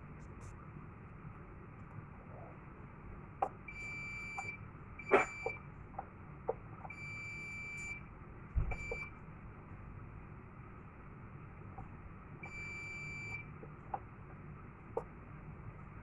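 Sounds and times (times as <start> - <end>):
alarm panel buzzer beeps: 3.7 - 5.6, 6.9 - 8.0, 8.8 - 9.1, 12.4 - 13.5.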